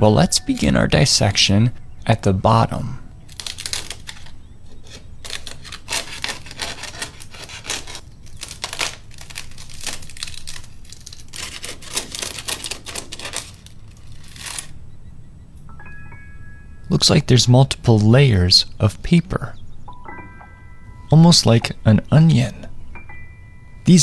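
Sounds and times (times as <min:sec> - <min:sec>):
papery wasp nest tearing: 0:00.0 - 0:14.8.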